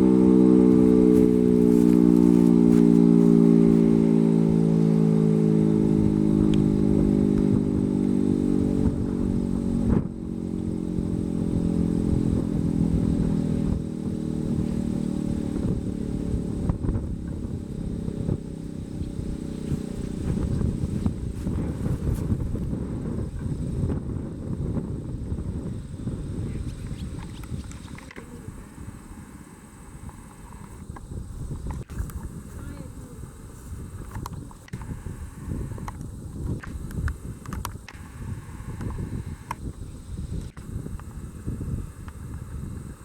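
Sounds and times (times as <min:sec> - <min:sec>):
siren winding down: 0:00.0 - 0:21.8
rumbling noise: 0:00.0 - 0:43.0.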